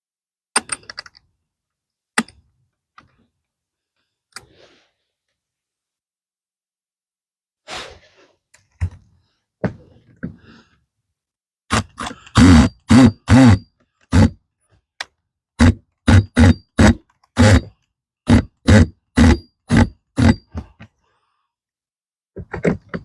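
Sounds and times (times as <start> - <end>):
impact driver bursts: 11.7 - 14.4, 15.6 - 17.7, 18.3 - 20.5.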